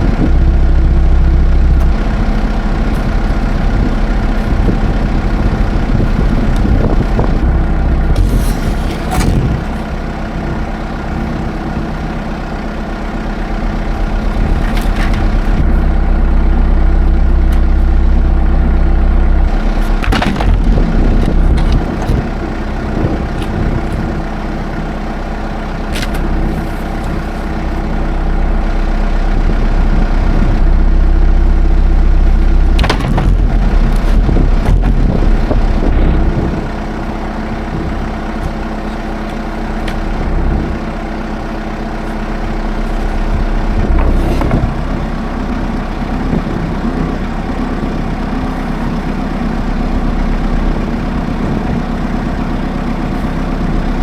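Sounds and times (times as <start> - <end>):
tractor engine running: 0.0 - 54.0
sharp clunks: 8.1 - 10.1, 19.8 - 22.4, 32.8 - 36.4, 43.9 - 44.9.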